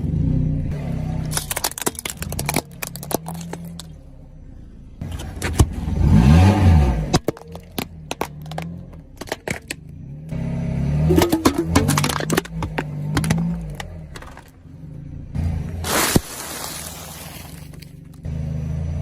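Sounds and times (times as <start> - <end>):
car engine running: 0.0 - 19.0
sharp cracks and crunches: 1.2 - 4.0, 11.5 - 14.6, 15.6 - 18.3.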